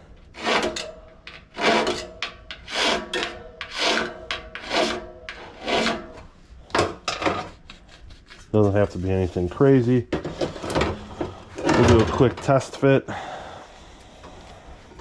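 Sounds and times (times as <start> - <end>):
file rasping metal: 0.3 - 6.3.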